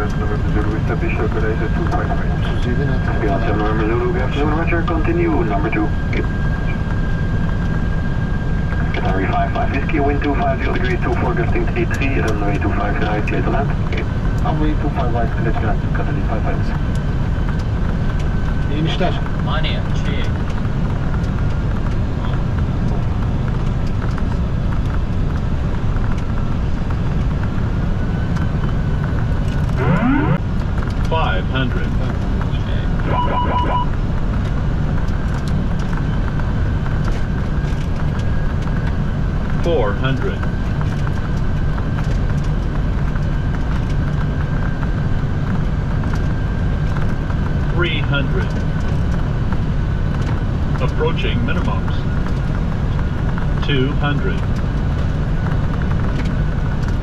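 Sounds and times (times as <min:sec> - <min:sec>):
airflow and engines rumbling: 0:00.0 - 0:57.0
rising tone: 0:29.6 - 0:30.5
faint steady high tone: 0:33.1 - 0:33.9.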